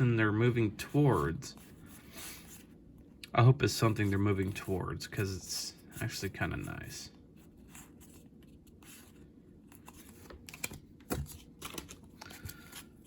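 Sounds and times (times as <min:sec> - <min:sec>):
trading cards being handled: 0:07.5 - 0:13.0.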